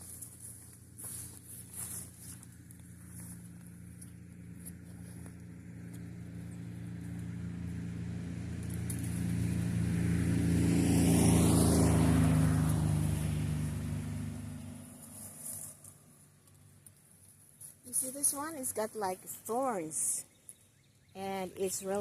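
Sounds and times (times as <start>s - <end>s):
vehicle driving past: 0.0s - 16.4s.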